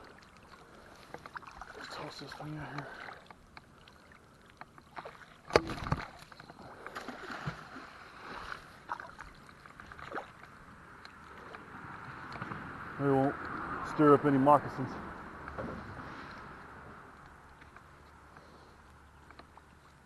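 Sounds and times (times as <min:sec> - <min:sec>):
water sounds: 0:00.0 - 0:20.0
magnet splashing into water: 0:04.9 - 0:07.9.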